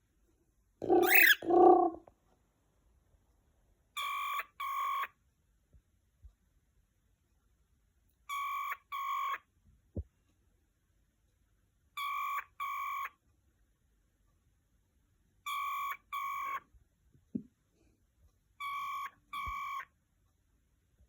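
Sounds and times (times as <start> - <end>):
cockatiel whistling like a phone ring: 4.0 - 5.1, 8.3 - 9.4, 12.0 - 13.1, 15.5 - 16.6, 18.6 - 19.9.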